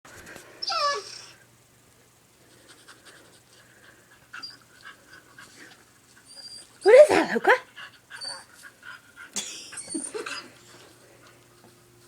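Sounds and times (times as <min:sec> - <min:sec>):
dog panting: 0:02.5 - 0:11.4.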